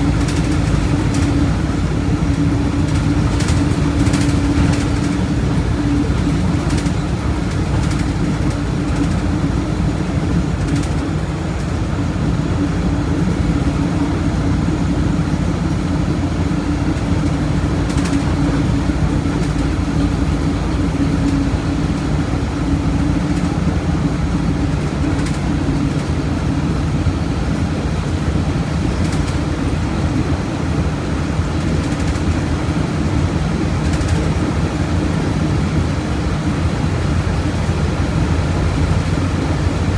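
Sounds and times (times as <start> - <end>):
bus diesel engine running: 0.0 - 39.9.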